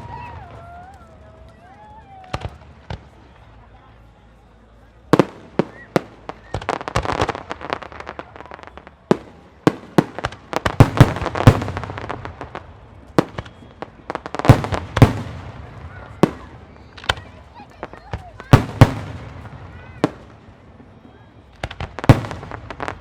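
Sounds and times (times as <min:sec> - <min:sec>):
firework crackling: 0:00.0 - 0:03.9, 0:05.0 - 0:23.0.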